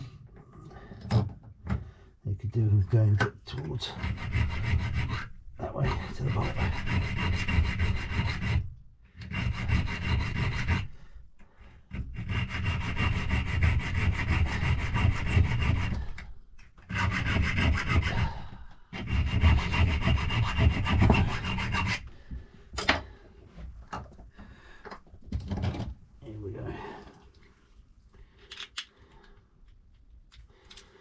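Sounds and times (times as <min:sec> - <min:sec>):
hand file rasping on metal: 0:03.8 - 0:22.2.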